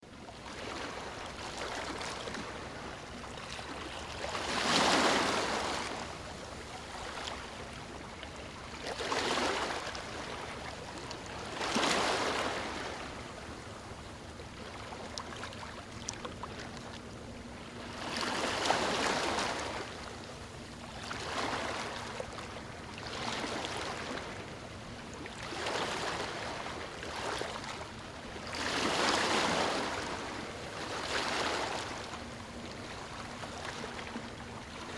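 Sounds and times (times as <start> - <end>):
surf washing: 3.9 - 7.5.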